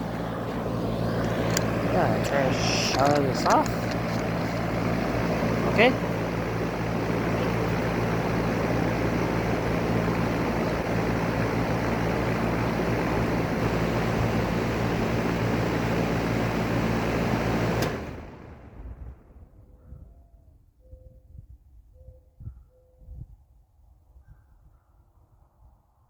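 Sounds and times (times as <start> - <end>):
air conditioner unit humming: 0.0 - 19.6
fan noise: 0.0 - 20.2.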